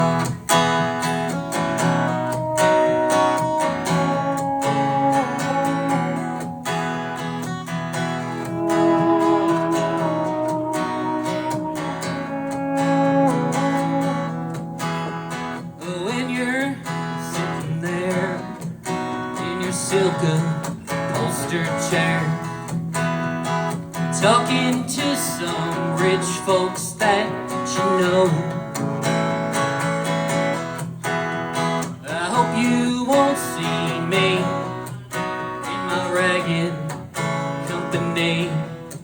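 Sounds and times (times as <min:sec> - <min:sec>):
strummed acoustic guitar: 0:00.0 - 0:39.0
wavering bending melody line: 0:02.0 - 0:07.3, 0:08.2 - 0:15.3.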